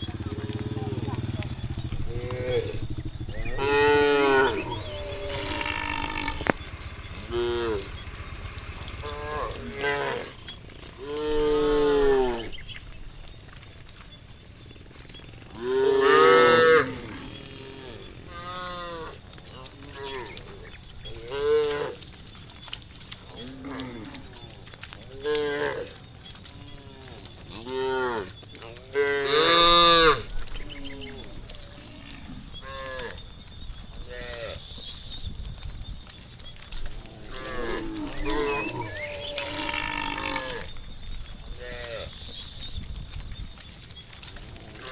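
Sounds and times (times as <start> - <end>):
cattle mooing: 0.0 - 8.1, 8.8 - 10.4, 15.6 - 19.2, 26.7 - 33.2, 37.0 - 40.7.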